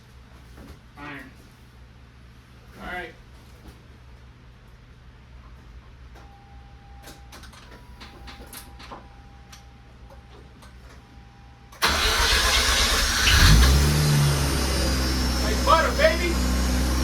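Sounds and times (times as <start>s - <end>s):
rotary engine starting: 11.8s - 17.0s.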